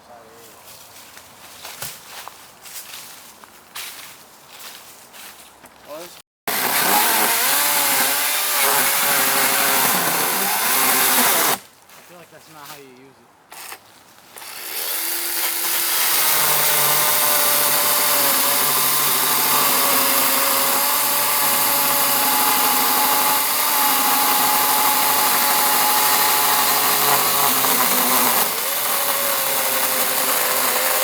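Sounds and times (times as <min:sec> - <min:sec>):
electric chainsaw cutting wood: 0:06.5 - 0:11.6, 0:14.4 - 0:31.0.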